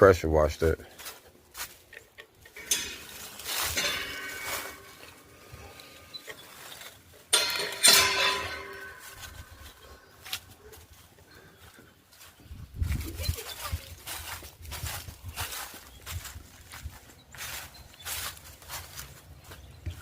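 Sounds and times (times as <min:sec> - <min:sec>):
ringing clinks: 0:02.6 - 0:09.9.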